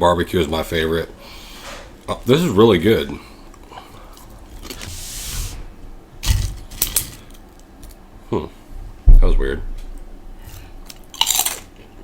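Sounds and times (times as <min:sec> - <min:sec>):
crunching pork rinds: 0:10.4 - 0:12.0.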